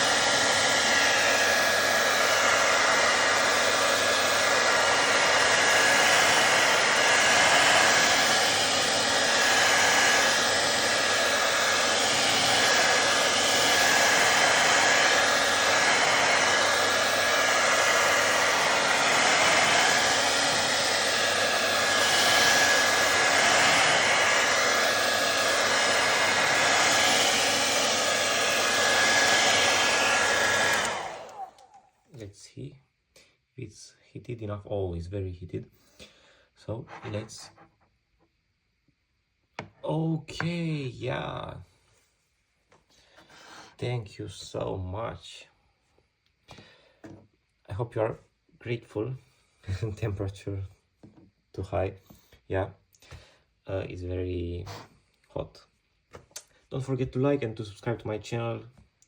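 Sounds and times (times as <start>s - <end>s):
hair dryer blowing: 0.0s - 32.0s.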